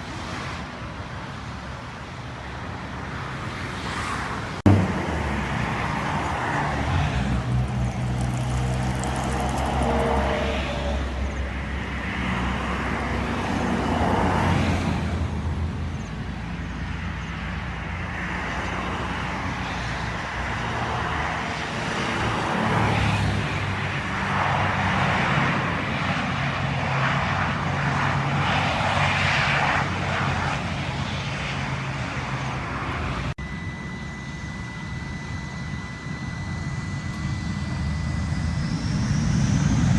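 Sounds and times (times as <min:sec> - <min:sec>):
aircraft engines rushing: 0:00.0 - 0:39.9
low engine hum: 0:04.6 - 0:29.0, 0:29.6 - 0:39.9
thin high tone: 0:33.4 - 0:39.9.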